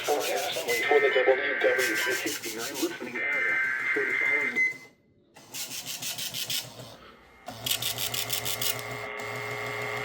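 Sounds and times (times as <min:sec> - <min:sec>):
raspy rhythmic radio crackle: 0:00.0 - 0:04.7.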